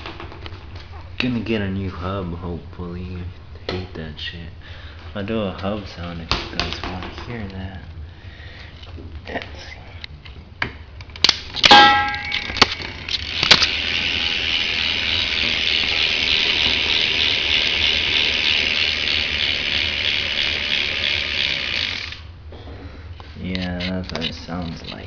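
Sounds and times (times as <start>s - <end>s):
bike hub ratcheting buzz: 11.5s - 22.3s
metal clangs: 11.6s - 12.8s.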